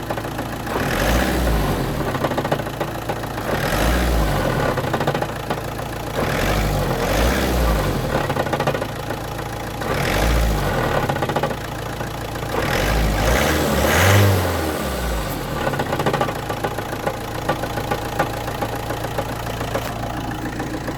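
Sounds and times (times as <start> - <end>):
car engine revving and idling: 0.0 - 20.9
sharp knocking from engine: 15.7 - 20.9.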